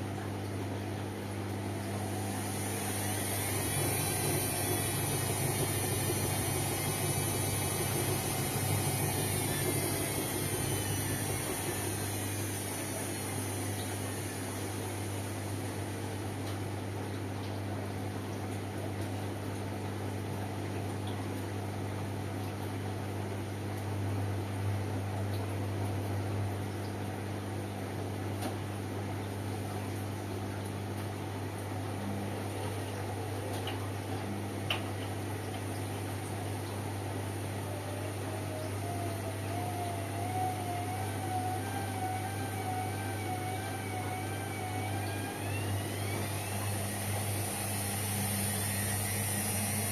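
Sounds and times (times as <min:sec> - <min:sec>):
washing machine humming: 0:00.0 - 0:49.9
wavering motor whine: 0:01.6 - 0:15.4, 0:37.0 - 0:49.9.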